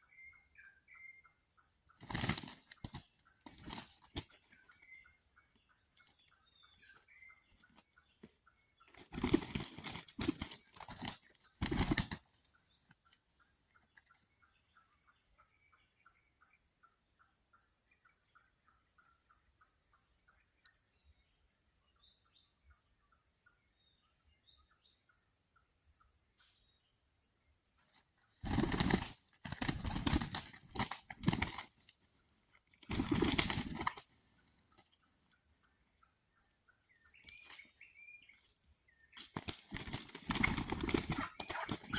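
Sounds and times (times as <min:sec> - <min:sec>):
fowl beating its wings: 0:02.0 - 0:04.4, 0:08.9 - 0:12.2, 0:28.4 - 0:31.8, 0:32.8 - 0:34.1, 0:39.2 - 0:41.9.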